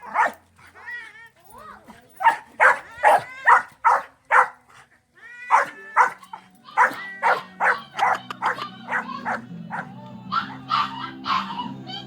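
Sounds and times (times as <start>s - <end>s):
dogs barking: 0.0s - 0.4s, 2.2s - 4.7s, 5.5s - 12.0s.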